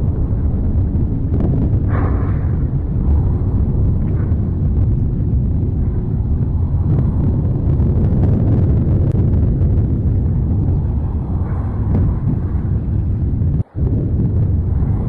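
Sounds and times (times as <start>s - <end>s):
volcano eruption low rumble: 0.0s - 15.0s.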